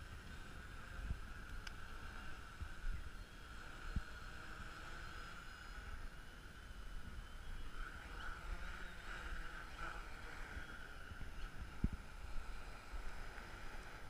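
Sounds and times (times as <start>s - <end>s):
drone propellers humming: 0.0s - 14.0s
wind buffeting microphone: 6.8s - 14.0s.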